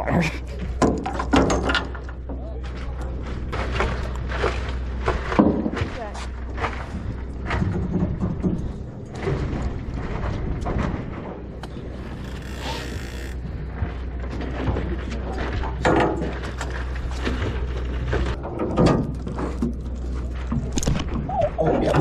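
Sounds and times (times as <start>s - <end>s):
steady low hum: 0.0s - 22.0s
fishing reel clicking: 11.6s - 13.4s.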